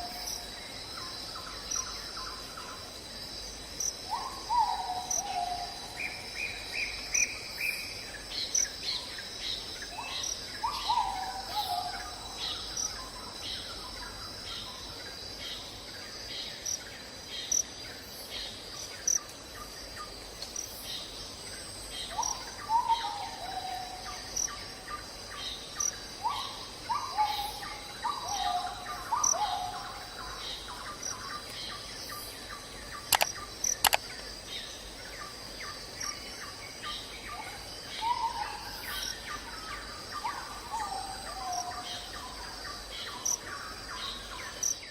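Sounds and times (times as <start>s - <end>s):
insect drone: 0.0s - 44.9s
sharp clicks: 33.1s - 34.1s.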